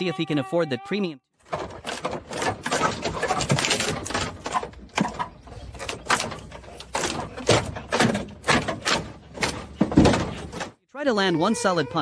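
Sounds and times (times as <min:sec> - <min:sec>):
clattering: 0:01.4 - 0:10.8
knocks and thuds: 0:01.4 - 0:10.8.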